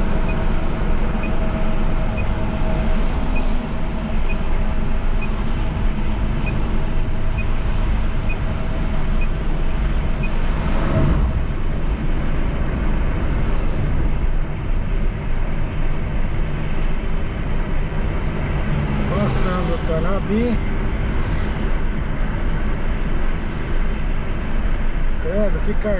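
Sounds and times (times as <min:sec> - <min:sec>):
car engine and road rumble: 0:00.0 - 0:25.9
vehicle passing by: 0:18.0 - 0:21.8.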